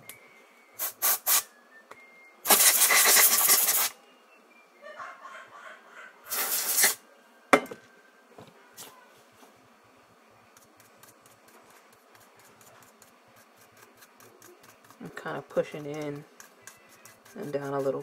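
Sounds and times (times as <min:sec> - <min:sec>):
compressed air hissing: 0:00.8 - 0:01.5, 0:02.4 - 0:04.0, 0:06.3 - 0:07.0
light scratching: 0:10.5 - 0:18.0.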